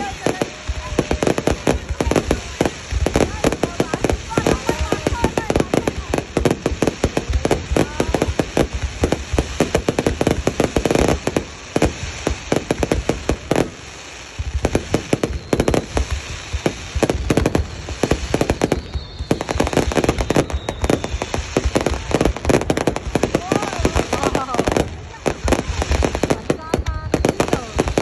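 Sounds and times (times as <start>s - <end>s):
fireworks bangs and crackles: 0.0s - 28.0s.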